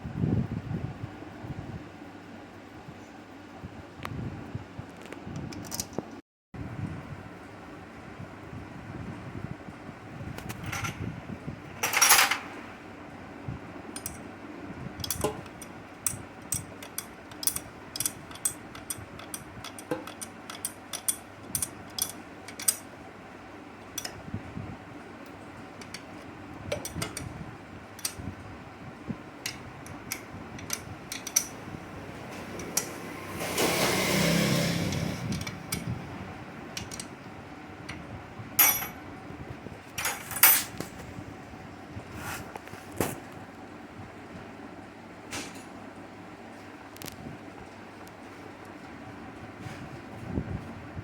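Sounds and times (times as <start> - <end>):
fan hum: 0.0 - 51.0
metallic tool clicks and clinks: 29.5 - 31.5.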